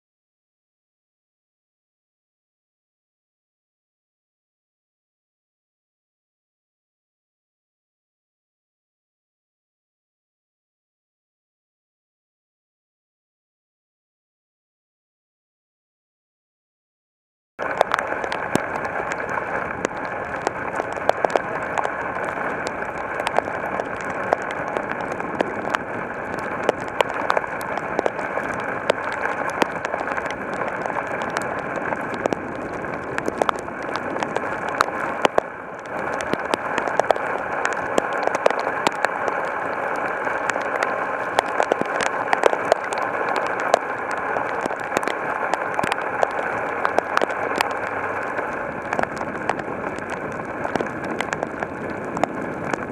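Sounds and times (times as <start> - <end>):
heavy rain falling: 17.6 - 52.9.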